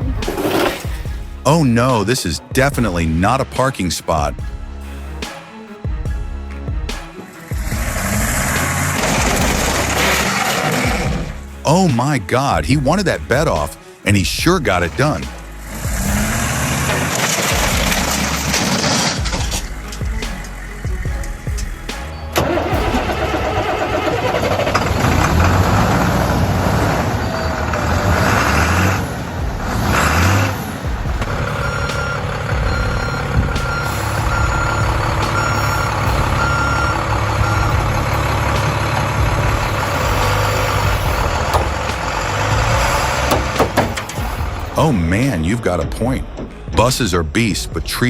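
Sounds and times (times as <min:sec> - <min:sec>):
vehicle engine revving: 0:04.3 - 0:12.0, 0:14.4 - 0:45.2.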